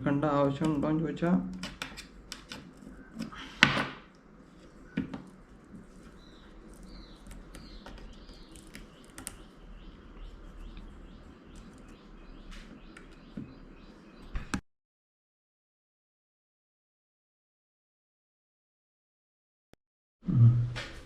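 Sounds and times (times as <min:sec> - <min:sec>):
faint bird chirps: 0:06.1 - 0:14.5.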